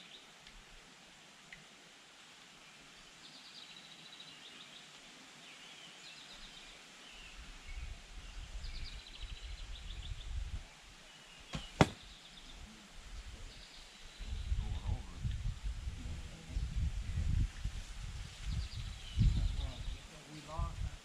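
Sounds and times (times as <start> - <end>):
arrow striking target: 11.6 - 12.0
low wind rumble: 14.2 - 21.0.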